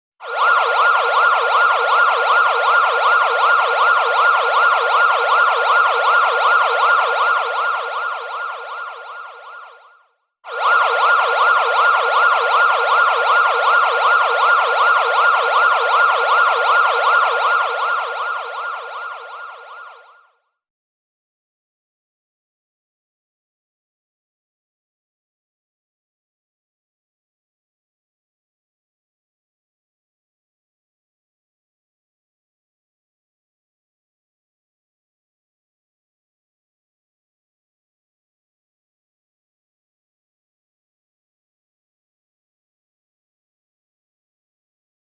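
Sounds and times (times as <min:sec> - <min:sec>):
police siren yelping: 0:00.2 - 0:20.3.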